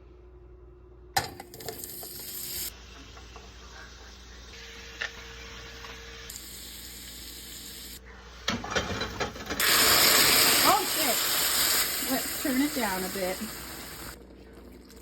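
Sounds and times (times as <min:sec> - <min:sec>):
loud sizzle in a frying pan: 0:01.9 - 0:08.0, 0:08.7 - 0:14.2.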